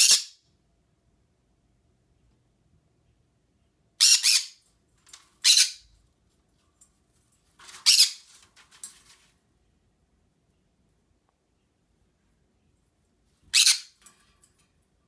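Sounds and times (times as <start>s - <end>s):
parrot squawking: 0.0s - 0.4s, 4.0s - 4.6s, 5.4s - 5.8s, 7.8s - 8.3s, 13.5s - 14.0s
parrot soft chirps: 4.0s - 4.6s, 5.4s - 5.9s, 7.8s - 8.3s, 13.5s - 14.0s.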